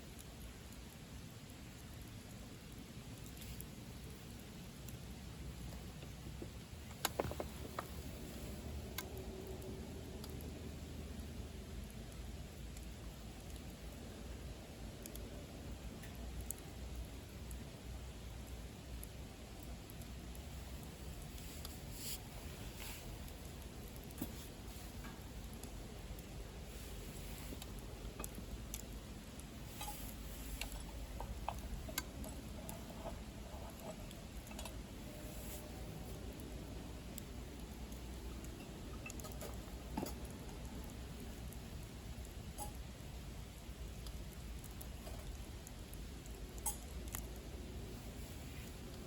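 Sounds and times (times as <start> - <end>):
faint fire crackles: 0.0 - 49.0
fire rumbling in a stove: 0.0 - 49.0.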